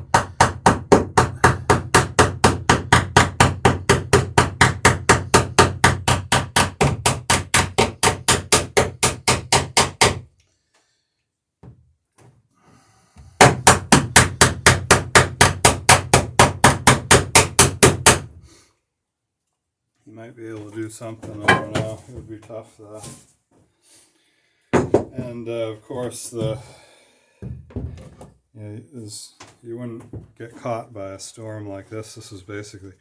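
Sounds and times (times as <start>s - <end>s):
rapid hammer blows on wood: 0.0s - 10.2s, 13.4s - 18.3s.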